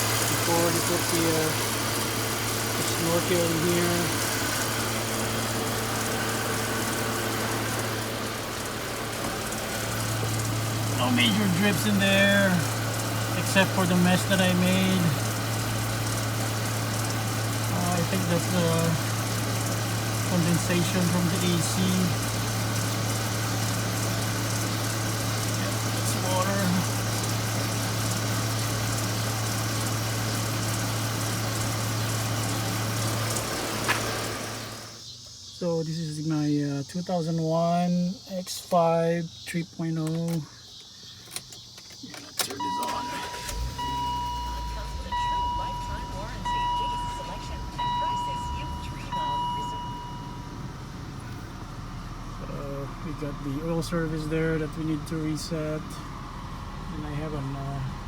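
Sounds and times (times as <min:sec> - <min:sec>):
car engine idling: 0:00.0 - 0:58.0
steady low hum: 0:42.1 - 0:58.0.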